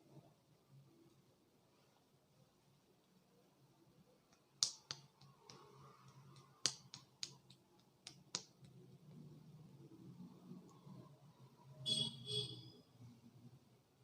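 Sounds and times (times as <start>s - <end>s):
sharp snapping pops: 4.3s - 8.8s.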